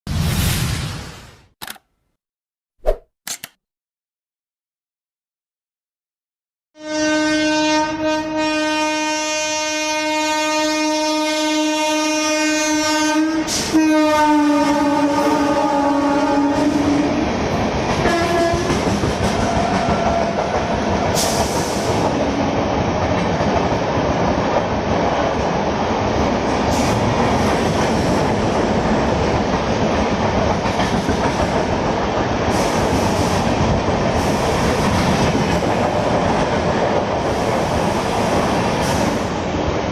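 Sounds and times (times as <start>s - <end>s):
train horn blast: 6.8s - 17.2s, 18.0s - 18.8s
train wheels clattering over rails: 17.8s - 22.3s, 26.7s - 38.0s.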